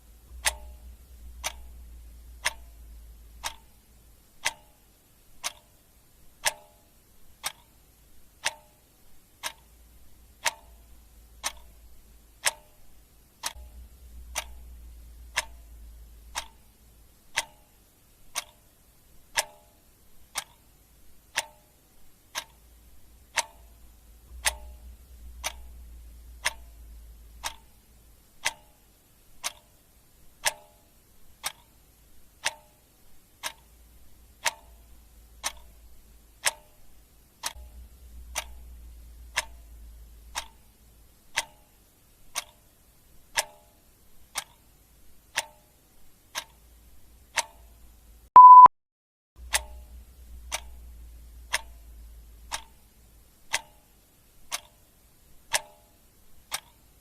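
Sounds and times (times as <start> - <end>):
faint low rumble: 0.0 - 19.4, 20.0 - 30.4, 33.0 - 43.3, 49.4 - 53.6
clock ticking: 0.0 - 48.7, 49.4 - 57.0.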